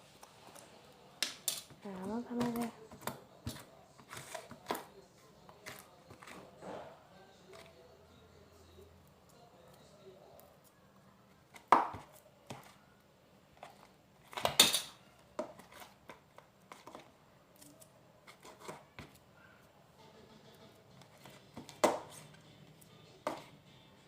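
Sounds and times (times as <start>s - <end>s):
spoon stirring thick slime: 1.9s - 12.8s, 15.2s - 19.3s.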